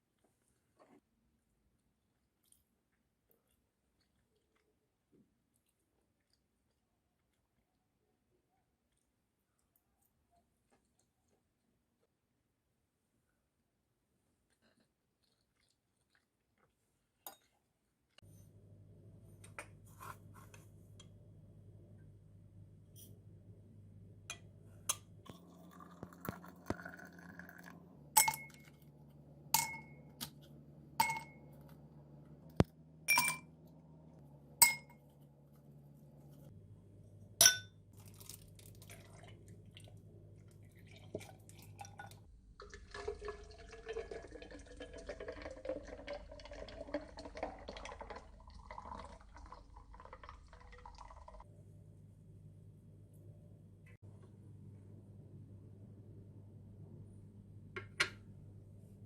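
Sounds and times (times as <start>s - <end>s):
liquid being poured: 25.3s - 28.9s, 38.0s - 51.5s
glassware and dishes clinking: 28.2s - 28.8s, 29.6s - 30.1s, 31.0s - 31.6s, 33.1s - 33.5s, 34.6s - 35.0s, 37.4s - 37.7s.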